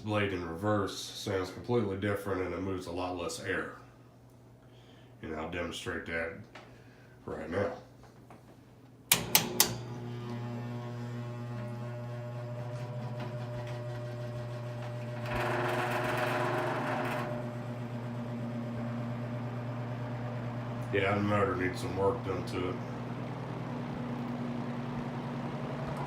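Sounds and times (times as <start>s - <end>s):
switch clicks: 9.1s - 9.8s
box fan motor humming: 9.1s - 26.0s.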